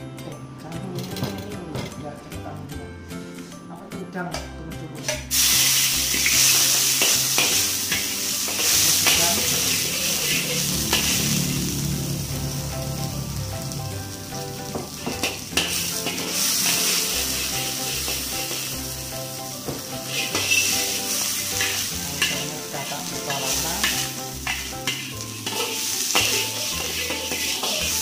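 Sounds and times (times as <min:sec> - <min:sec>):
spatula scraping a pan: 0:05.1 - 0:11.8, 0:14.5 - 0:18.9, 0:19.9 - 0:28.0
seafood sizzling in oil: 0:05.2 - 0:28.0.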